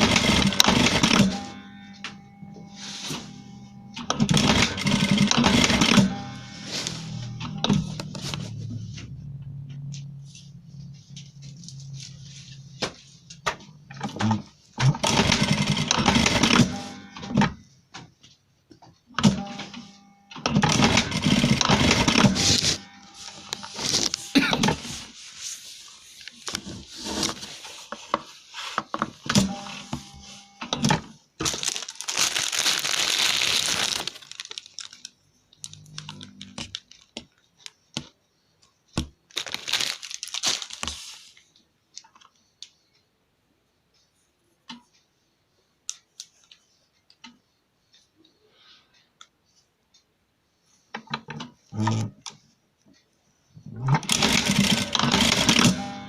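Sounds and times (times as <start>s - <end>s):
cloth rustling and crinkling: 22.4s - 28.9s, 31.4s - 37.8s, 39.3s - 41.4s.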